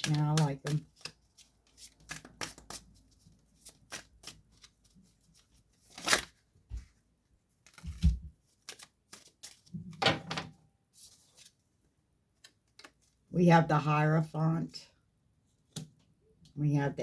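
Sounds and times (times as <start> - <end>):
cards clicking: 0.0 - 1.2.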